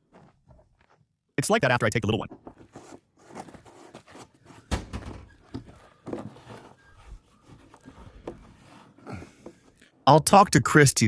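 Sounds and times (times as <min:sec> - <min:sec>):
objects knocking and thudding: 0:02.3 - 0:06.8.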